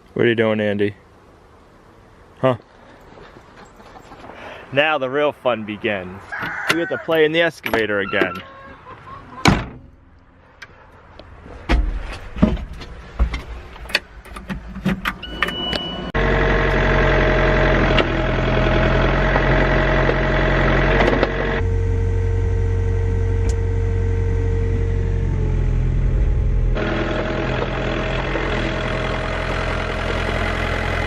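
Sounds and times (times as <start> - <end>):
excavator diesel engine running: 15.3 - 31.0.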